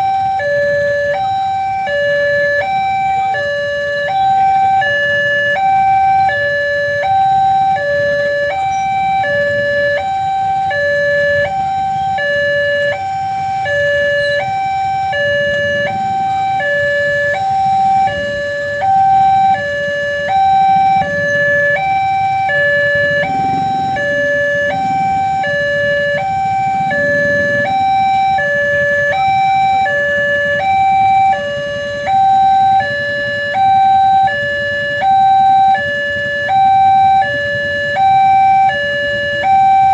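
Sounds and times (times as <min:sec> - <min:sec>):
two-tone level crossing alarm: 0:00.0 - 0:39.9
low rumble: 0:22.5 - 0:28.4.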